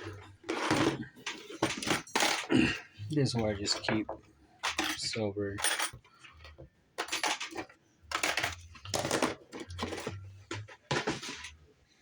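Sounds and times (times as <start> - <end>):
scrap metal clattering and scraping: 0.0 - 2.5, 3.4 - 11.6.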